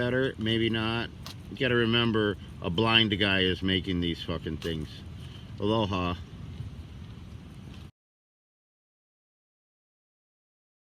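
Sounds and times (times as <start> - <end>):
low background rumble and hiss: 0.0 - 7.9.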